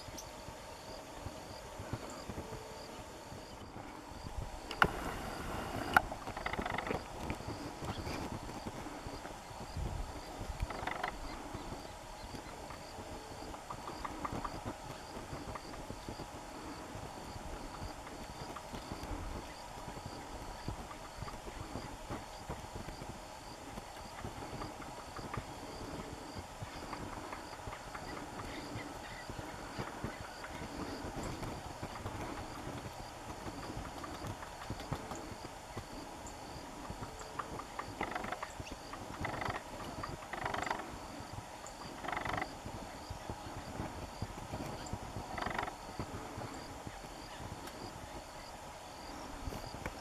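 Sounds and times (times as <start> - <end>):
low wind rumble: 0.0 - 34.5
faint high ticking: 3.6 - 14.8
woodpecker pecking: 4.6 - 9.3, 10.2 - 11.8, 37.0 - 41.0, 41.8 - 42.5, 44.6 - 45.8.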